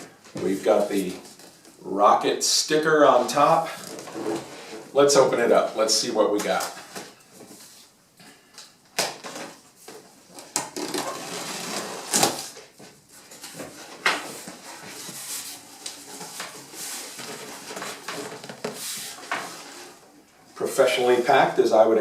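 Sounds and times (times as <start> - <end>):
cardboard rustling and scraping: 3.2 - 5.4, 9.2 - 21.5.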